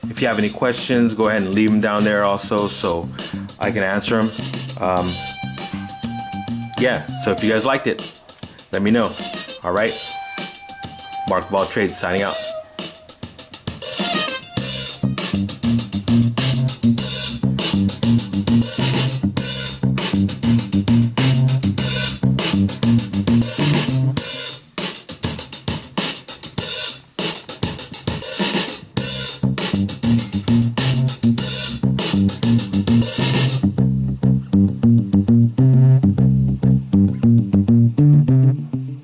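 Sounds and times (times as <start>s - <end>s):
drum-machine beat: 0.0s - 33.8s
repeating bassline: 3.0s - 7.8s, 14.0s - 24.2s, 29.4s - 39.0s.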